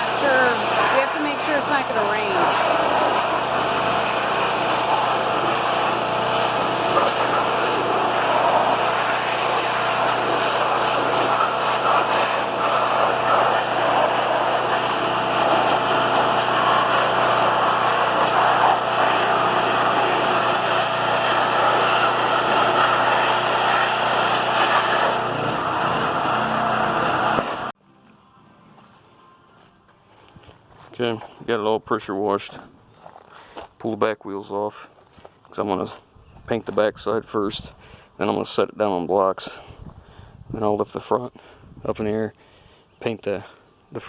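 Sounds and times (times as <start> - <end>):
pressure washer spraying: 0.0 - 27.7.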